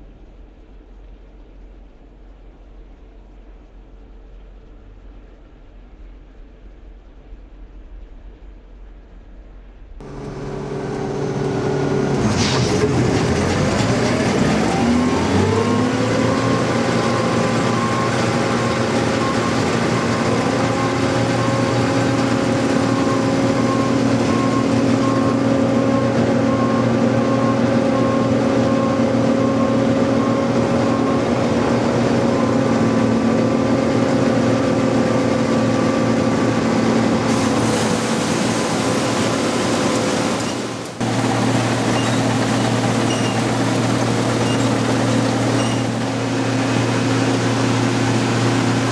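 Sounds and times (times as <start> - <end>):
combine harvester engine drone: 10.0 - 48.9.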